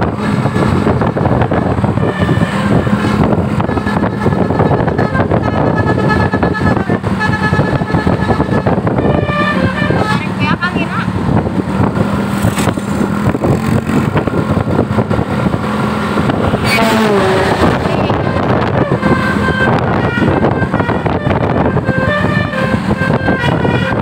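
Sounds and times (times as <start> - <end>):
bus engine and road noise: 0.0 - 24.0
musical air horn tune: 1.9 - 10.4, 16.6 - 24.0.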